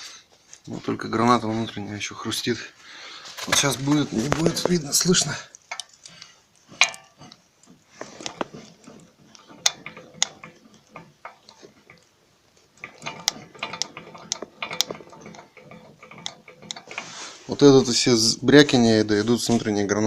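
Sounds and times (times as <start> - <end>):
driveshaft joint clicking: 3.6 - 18.3.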